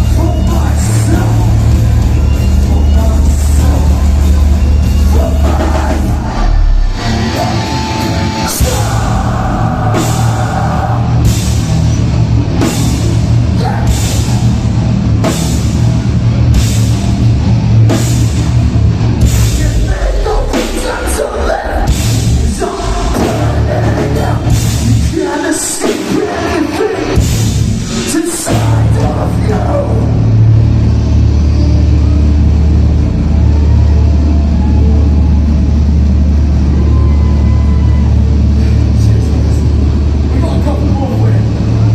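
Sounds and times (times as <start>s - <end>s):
vocals: 0.0s - 14.8s, 19.2s - 30.9s, 38.0s - 41.9s
drum kit crashing cymbals: 0.0s - 21.0s
distorted guitars and bass: 0.0s - 41.9s.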